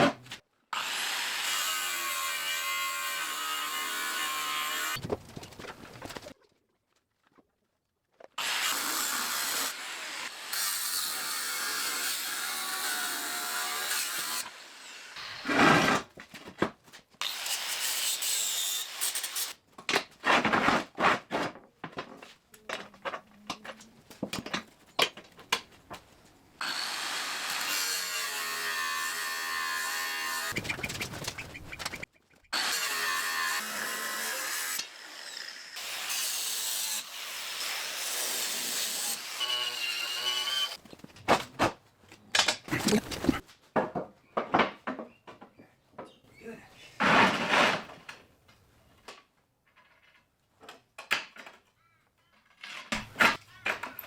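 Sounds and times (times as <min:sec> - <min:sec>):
power tools grinding steel: 0:00.8 - 0:05.0, 0:08.4 - 0:15.7, 0:26.6 - 0:30.6, 0:32.6 - 0:40.8.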